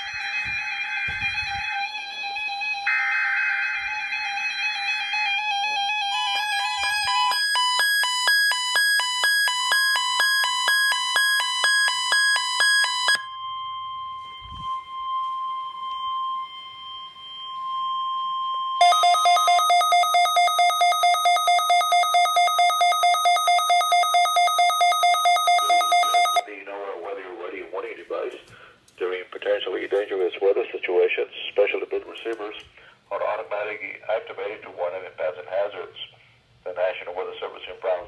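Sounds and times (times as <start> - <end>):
rapidly pulsing electronic alarm: 0.0 - 26.5
steady warning tone: 0.0 - 26.6
stepping electronic beeps: 18.8 - 26.4.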